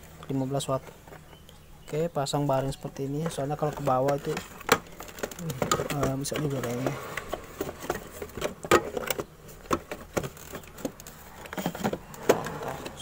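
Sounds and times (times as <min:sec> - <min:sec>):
clicks and knocks of hard parts: 0:03.2 - 0:13.0.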